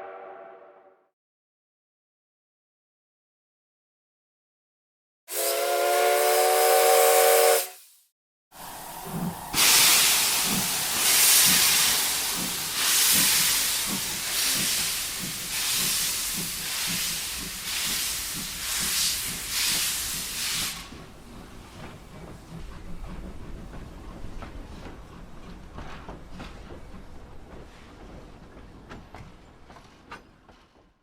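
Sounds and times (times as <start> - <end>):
steam hiss: 8.6 - 21.0
steam locomotive chuffing: 8.6 - 29.5.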